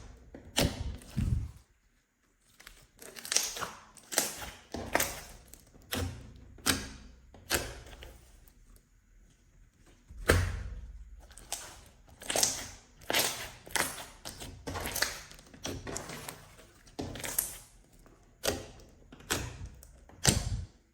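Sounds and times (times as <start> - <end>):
slime squeezed by hand: 0.6 - 1.6.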